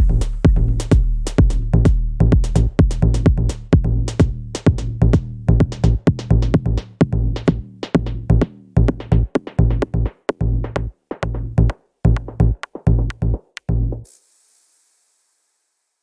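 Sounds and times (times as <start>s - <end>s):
electronic music with drum-machine beat: 0.0s - 3.5s
faint hiss: 14.1s - 16.0s.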